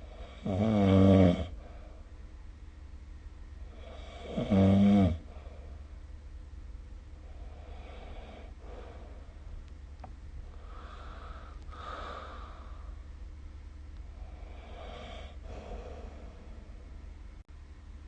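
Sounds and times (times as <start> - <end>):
steady low hum: 0.0 - 18.0
person breathing noisily with snorting rasp: 7.2 - 9.4, 10.5 - 13.0, 14.2 - 16.6.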